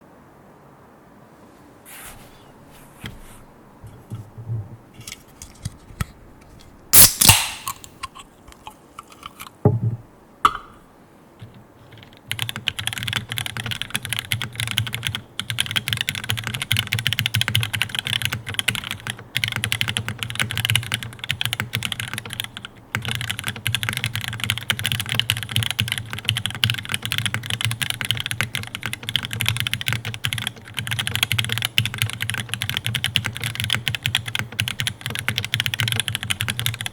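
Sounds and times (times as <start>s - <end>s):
mechanical keyboard typing: 11.4s - 36.9s.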